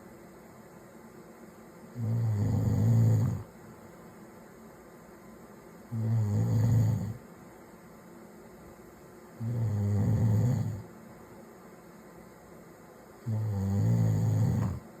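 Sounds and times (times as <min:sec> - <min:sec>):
man snoring: 0:02.0 - 0:03.5, 0:05.9 - 0:07.2, 0:09.4 - 0:10.8, 0:13.2 - 0:14.8
quiet breathing: 0:13.3 - 0:15.0.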